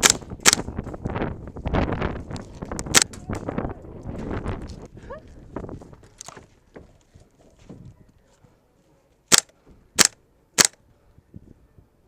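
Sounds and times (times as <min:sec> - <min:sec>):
airsoft gun shots: 0:00.0 - 0:00.7, 0:09.3 - 0:10.8.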